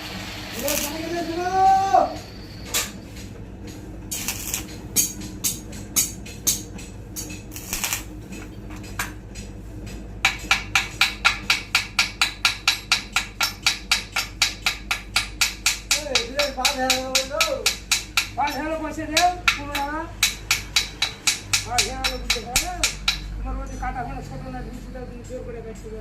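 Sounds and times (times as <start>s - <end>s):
low steady hum: 0.0s - 26.0s
hand hammer striking metal: 10.2s - 23.3s.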